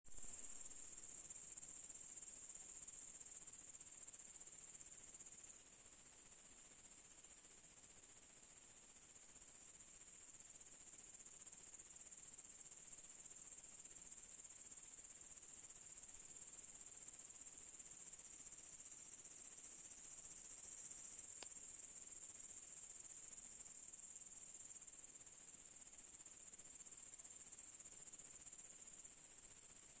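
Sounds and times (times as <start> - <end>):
crickets chirring: 0.2 - 30.0
faint click: 21.3 - 21.6.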